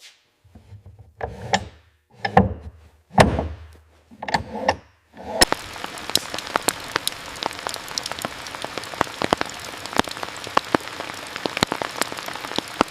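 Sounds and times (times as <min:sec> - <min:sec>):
steady rain hiss: 0:05.2 - 0:12.9.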